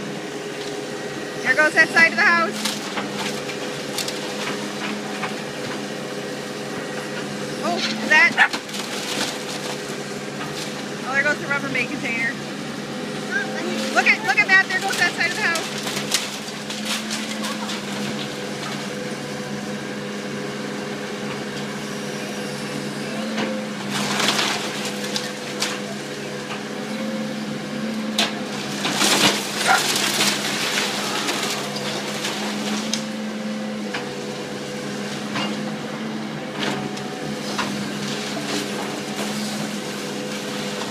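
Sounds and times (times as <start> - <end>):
machine engine running: 0.0 - 40.9
wood cracking and splintering: 2.6 - 5.4, 8.1 - 10.8, 13.6 - 18.9, 23.8 - 25.9, 28.2 - 33.2.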